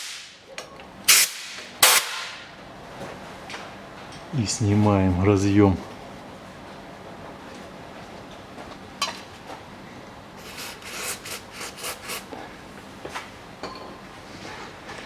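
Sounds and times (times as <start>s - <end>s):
short rubbing scrapes: 10.4s - 12.3s.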